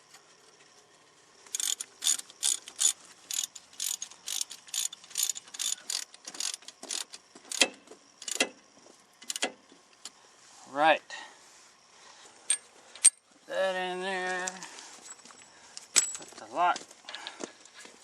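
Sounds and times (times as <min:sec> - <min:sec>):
hand ratchet clicking: 0:01.5 - 0:08.5.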